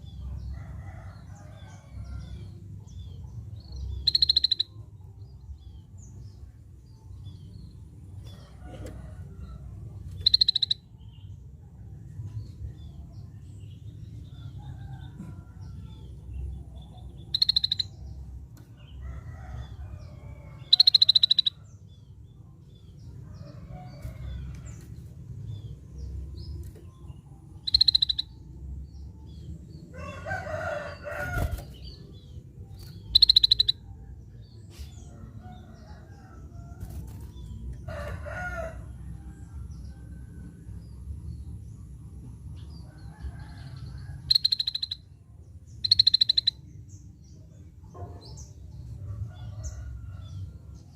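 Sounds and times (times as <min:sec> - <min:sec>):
bulbul trilled calls: 0:10.2 - 0:10.8, 0:17.3 - 0:18.0, 0:27.6 - 0:28.4, 0:33.1 - 0:33.8, 0:45.8 - 0:46.6.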